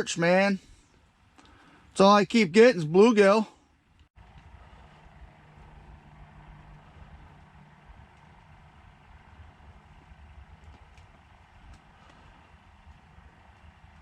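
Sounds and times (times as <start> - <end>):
faint low rumble: 3.8 - 14.0.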